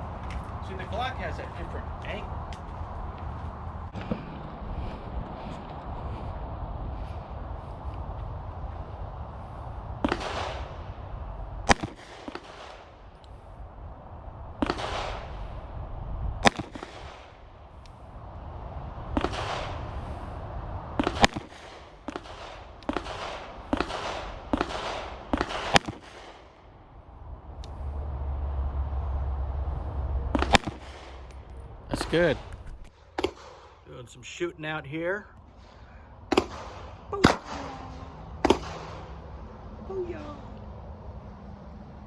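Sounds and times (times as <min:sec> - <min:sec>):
pistol shots: 0:21.0 - 0:26.4, 0:33.2 - 0:33.8, 0:36.3 - 0:39.2
fainter distant shots: 0:32.0 - 0:39.7.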